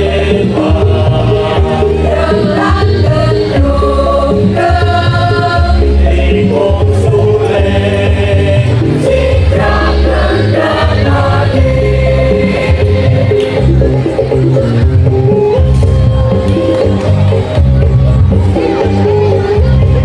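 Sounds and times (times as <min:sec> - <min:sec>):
choir singing: 0:00.0 - 0:13.7
instrumental accompaniment with bass: 0:00.0 - 0:20.0.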